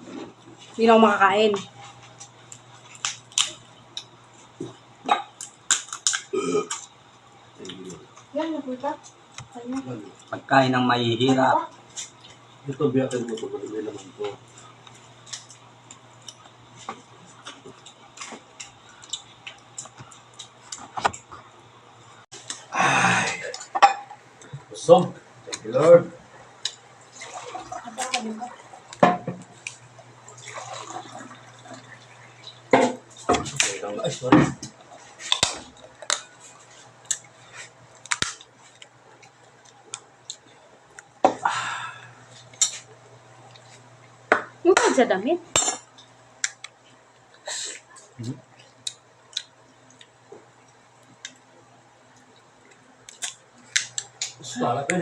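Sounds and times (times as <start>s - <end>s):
crab shell cracking: 5.3s - 6.9s, 38.0s - 40.4s, 53.0s - 54.4s.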